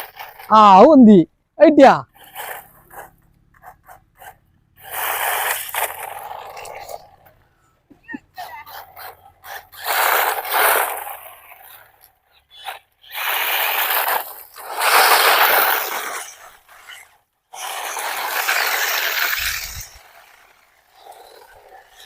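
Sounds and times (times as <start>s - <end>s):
rc car scraping over rough ground: 0.0s - 0.6s, 2.1s - 22.0s.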